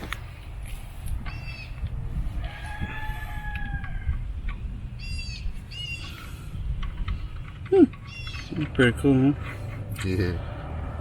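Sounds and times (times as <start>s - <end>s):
bird calls: 1.2s - 1.8s, 4.5s - 8.9s.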